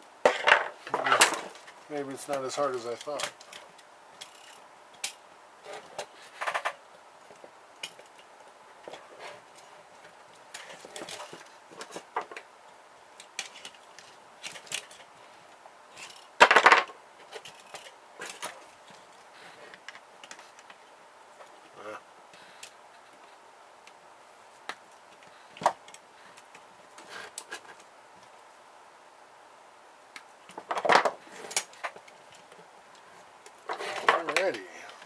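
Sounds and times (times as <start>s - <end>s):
loud clatter of parts: 0.2s - 1.8s, 16.0s - 18.7s, 30.5s - 32.1s, 33.7s - 34.6s.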